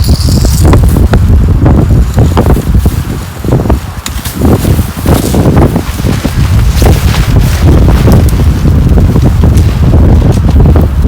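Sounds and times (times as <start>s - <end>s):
strong wind on microphone: 0.0s - 11.0s.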